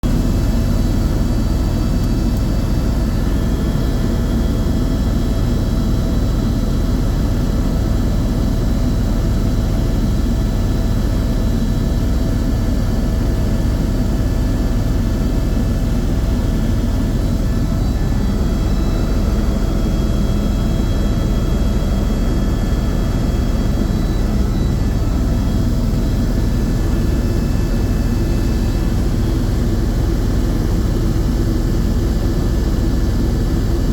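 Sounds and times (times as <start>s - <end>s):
helicopter rotor and engine drone: 0.0s - 33.9s
faint whine tones: 8.2s - 33.9s.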